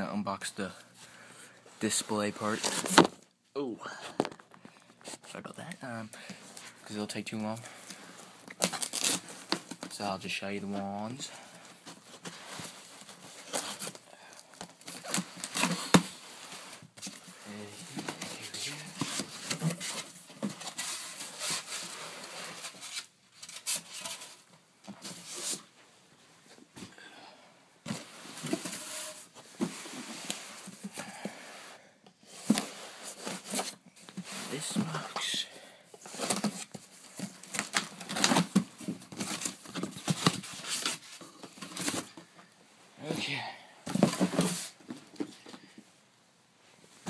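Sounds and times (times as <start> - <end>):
cardboard rustling and scraping: 1.8 - 3.2, 14.7 - 25.7, 27.8 - 31.0, 32.2 - 35.3, 36.0 - 42.3, 43.9 - 45.6.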